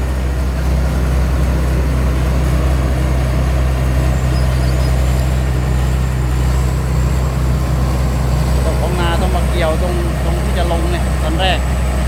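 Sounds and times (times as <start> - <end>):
diesel engine humming: 0.0 - 12.0
harvesting machinery noise: 0.0 - 12.0.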